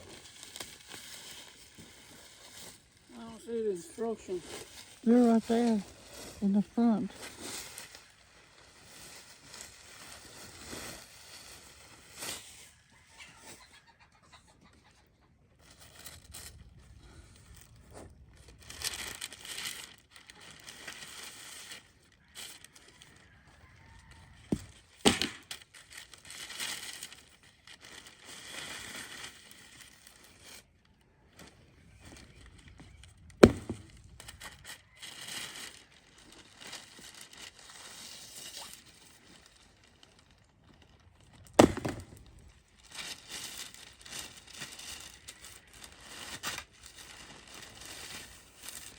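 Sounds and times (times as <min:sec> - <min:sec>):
paper and cardboard rustling: 0:31.4 - 0:40.9, 0:41.5 - 0:48.9
wooden pieces knocking: 0:41.6 - 0:42.2.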